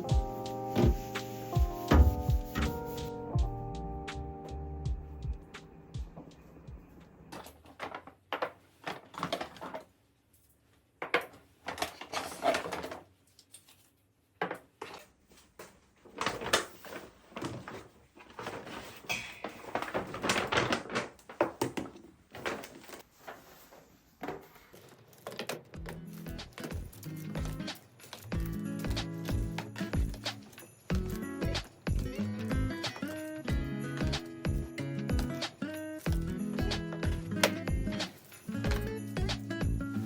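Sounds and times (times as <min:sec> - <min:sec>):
food packages rustling: 0:07.3 - 0:10.0, 0:14.7 - 0:31.2.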